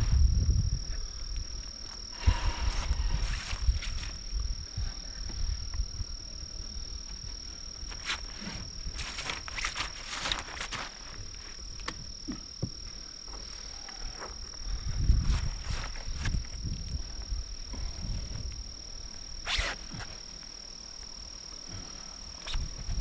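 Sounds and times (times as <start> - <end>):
night insects trilling: 0.0 - 23.0
rustling: 1.9 - 4.2, 7.0 - 11.9
footsteps: 7.9 - 11.6.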